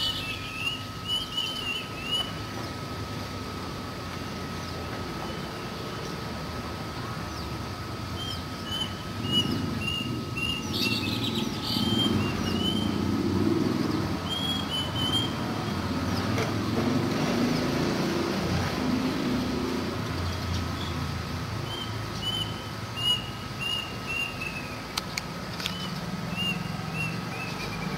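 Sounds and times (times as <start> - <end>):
cuckoo calling: 0.0 - 2.5, 8.2 - 13.1, 14.2 - 15.5, 21.7 - 27.9.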